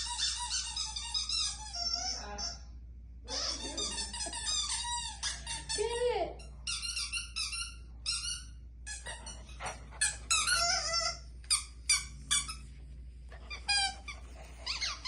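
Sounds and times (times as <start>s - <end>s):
dog whining: 3.3s - 15.0s.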